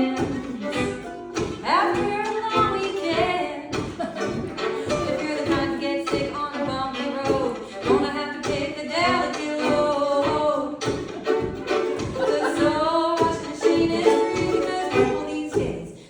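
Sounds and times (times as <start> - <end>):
person singing: 0.0 - 1.0, 1.6 - 11.0, 11.6 - 16.0
strummed acoustic string instrument: 0.0 - 16.0.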